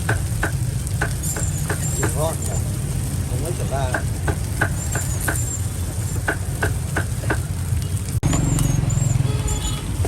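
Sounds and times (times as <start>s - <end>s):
sharp knocks: 0.0s - 2.2s, 3.9s - 5.4s, 6.2s - 7.5s
vehicle engine rumbling: 0.0s - 10.0s.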